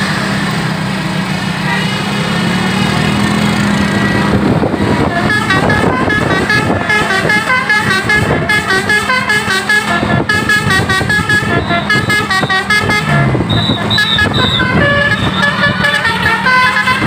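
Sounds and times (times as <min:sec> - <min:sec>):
bus engine running: 0:00.0 - 0:17.0
multi-trumpet bus horn tune: 0:04.7 - 0:17.0.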